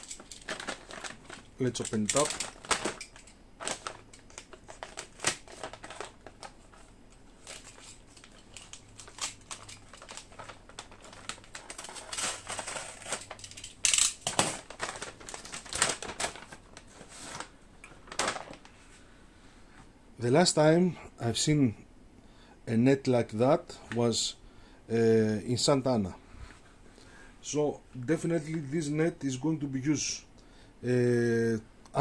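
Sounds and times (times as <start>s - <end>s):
plastic packaging crinkling: 0.0s - 18.8s.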